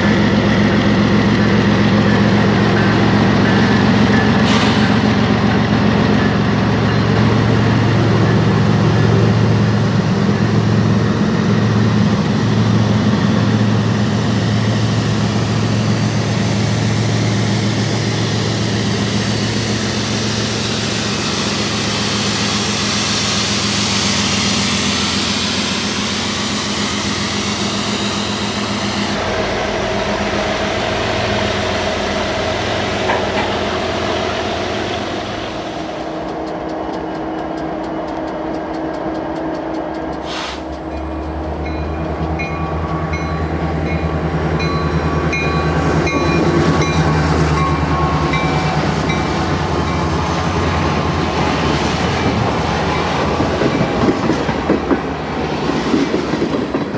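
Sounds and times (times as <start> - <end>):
diesel locomotive engines: 0.0 - 56.9
railcars rolling by: 0.0 - 56.9.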